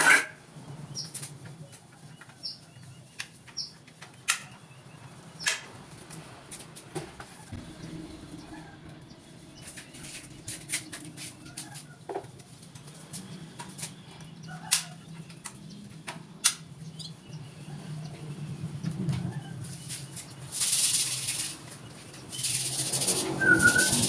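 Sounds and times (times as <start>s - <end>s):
steady low hum: 4.8s - 20.5s
birds fluttering wings: 19.0s - 24.0s.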